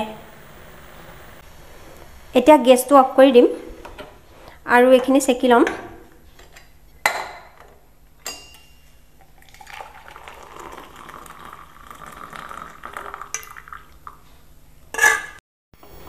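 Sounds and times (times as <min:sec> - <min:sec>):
metal clink: 0:08.2 - 0:08.9.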